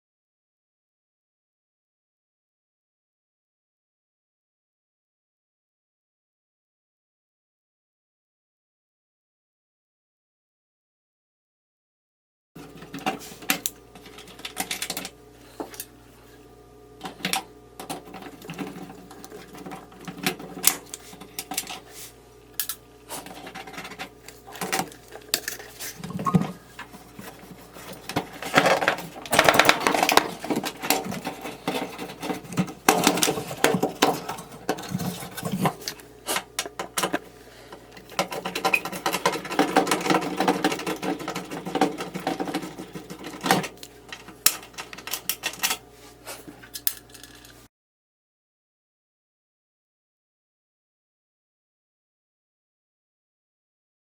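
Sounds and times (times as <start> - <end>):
metal parts clicking and rattling: 12.8 - 15.1, 22.6 - 37.2, 37.9 - 45.8, 46.6 - 47.6.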